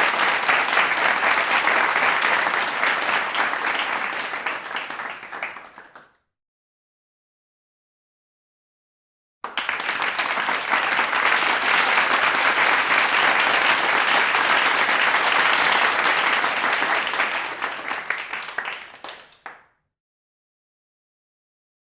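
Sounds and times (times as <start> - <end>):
crowd applauding: 0.0 - 6.1, 9.4 - 19.6.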